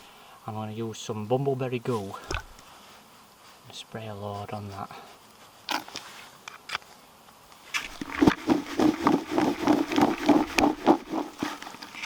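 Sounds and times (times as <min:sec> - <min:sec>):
fast rhythmic rattling: 0:07.9 - 0:11.6.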